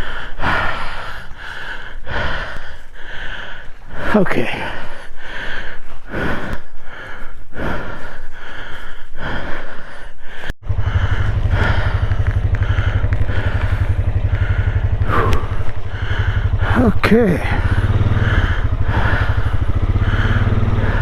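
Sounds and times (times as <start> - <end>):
repeated noisy strokes: 10.6 - 21.0
small engine running steadily: 10.6 - 21.0.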